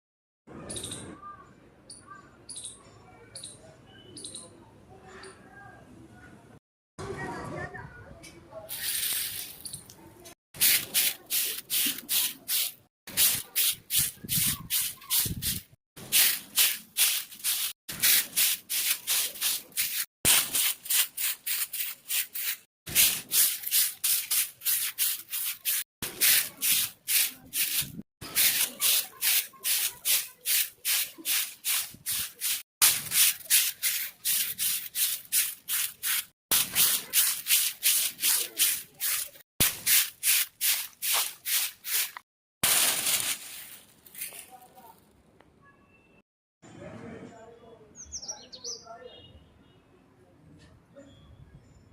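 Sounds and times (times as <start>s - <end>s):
rapid scrubbing strokes: 10.6s - 42.2s.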